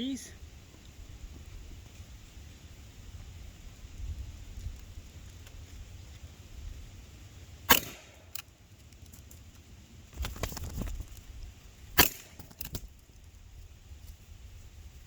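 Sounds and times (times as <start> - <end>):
air pistol shots cracking: 7.7 - 8.4, 12.0 - 12.8
pistol handling clicks: 7.7 - 9.0.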